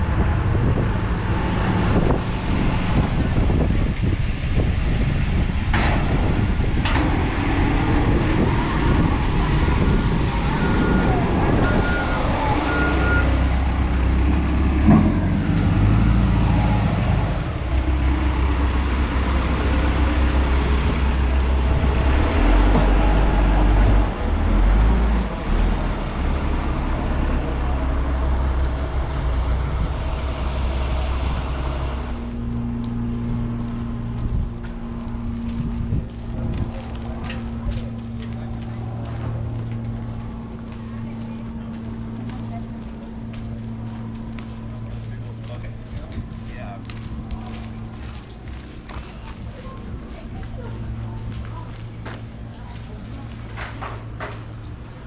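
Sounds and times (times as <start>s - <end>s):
diesel engine rumbling: 0.0s - 55.0s
reversing alarm beeping: 8.8s - 13.3s.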